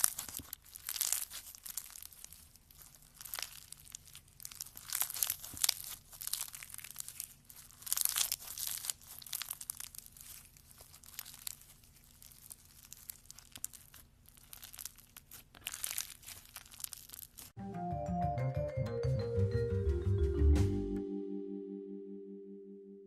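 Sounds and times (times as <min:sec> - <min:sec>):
crunchy slime crackling: 0:00.0 - 0:17.6.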